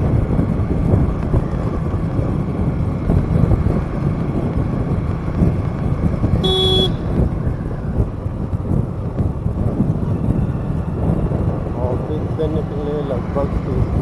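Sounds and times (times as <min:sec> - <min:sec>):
road traffic rumble: 0:00.0 - 0:14.0
wind on microphone: 0:00.0 - 0:14.0
vehicle horn honk: 0:06.4 - 0:07.2.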